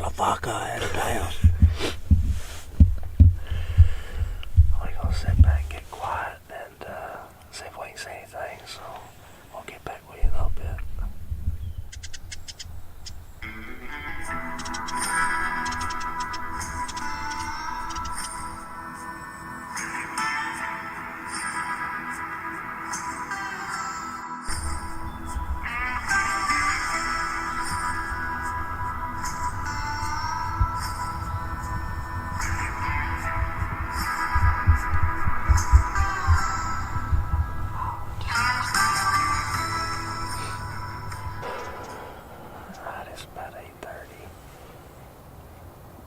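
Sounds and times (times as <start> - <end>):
background music sustained tones: 12.6 - 44.0.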